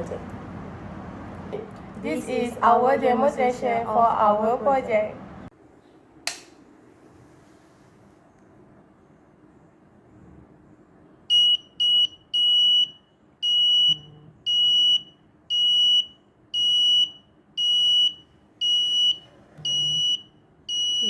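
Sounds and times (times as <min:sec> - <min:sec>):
high alarm buzzer beeps: 0:11.3 - 0:21.0.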